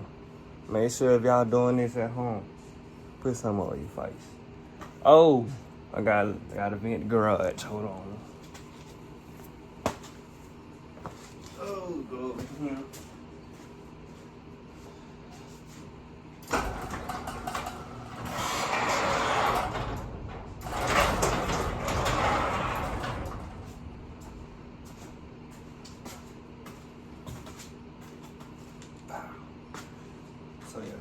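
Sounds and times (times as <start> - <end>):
steady low hum: 0.0 - 31.0
garage door rumbling open: 16.4 - 28.0.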